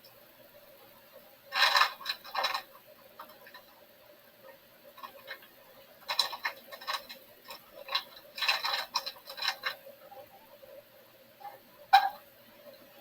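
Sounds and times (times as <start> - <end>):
faint hum: 0.0 - 13.0
cookware and utensils clattering: 1.5 - 3.7, 5.0 - 9.8.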